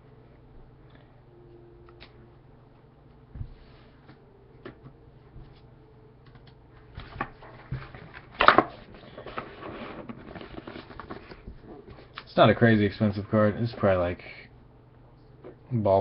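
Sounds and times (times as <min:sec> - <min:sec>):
card packaging rustling: 0:07.0 - 0:11.5.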